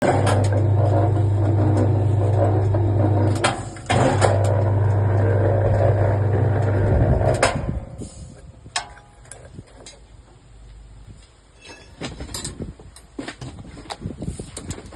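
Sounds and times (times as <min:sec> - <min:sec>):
deep motor hum: 0:00.0 - 0:08.6.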